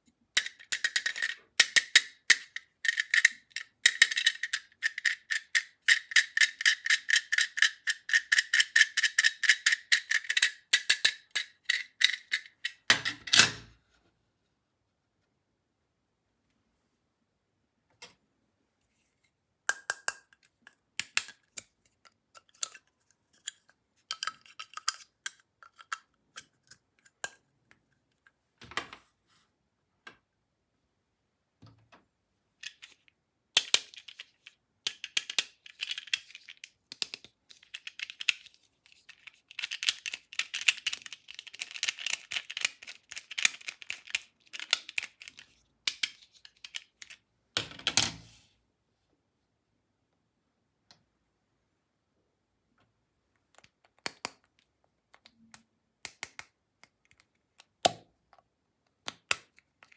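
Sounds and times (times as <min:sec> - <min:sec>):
plastic toys clicking and knocking: 0:00.4 - 0:13.7, 0:19.7 - 0:27.4, 0:32.6 - 0:33.0, 0:33.6 - 0:48.2, 0:53.5 - 0:55.4, 0:56.1 - 0:59.9.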